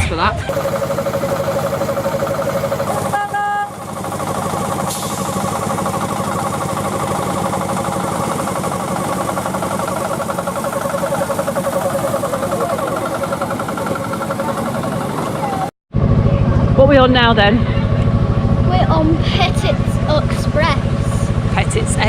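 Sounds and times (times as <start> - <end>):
miniature train engine running: 0.5 - 15.7
train horn toot: 3.0 - 3.8.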